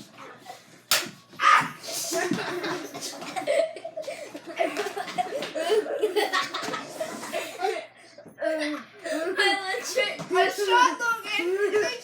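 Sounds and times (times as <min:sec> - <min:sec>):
children laughing: 0:01.5 - 0:10.2, 0:11.2 - 0:12.0.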